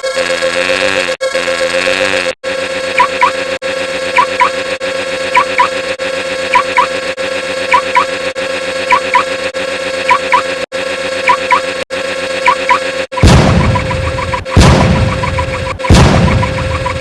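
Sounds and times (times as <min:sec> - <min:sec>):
steady buzzing hum: 0:00.3 - 0:17.0
quick rising blips: 0:03.0 - 0:03.4, 0:06.5 - 0:06.9, 0:08.9 - 0:09.3, 0:12.4 - 0:17.0.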